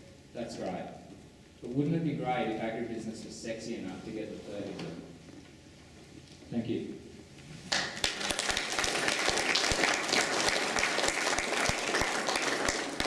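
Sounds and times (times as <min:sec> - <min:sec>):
audience applauding: 0:07.7 - 0:13.0.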